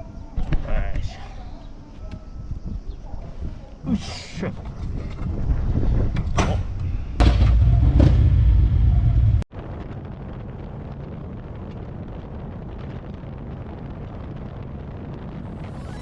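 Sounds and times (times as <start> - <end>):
motorcycle engine rumbling: 7.2 - 9.5.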